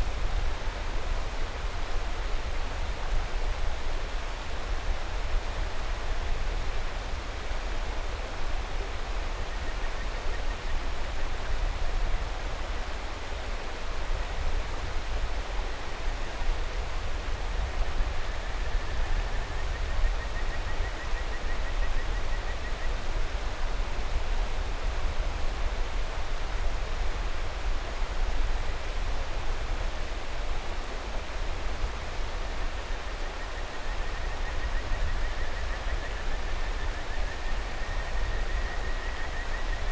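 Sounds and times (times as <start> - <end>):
mountain river rushing: 21.0 - 39.9.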